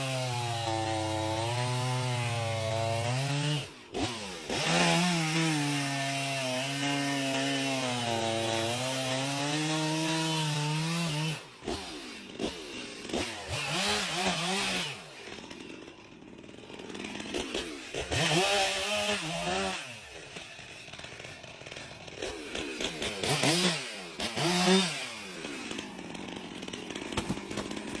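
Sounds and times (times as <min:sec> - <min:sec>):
chainsaw cutting wood: 0:00.0 - 0:28.0
chainsaw revving and idling: 0:00.0 - 0:28.0.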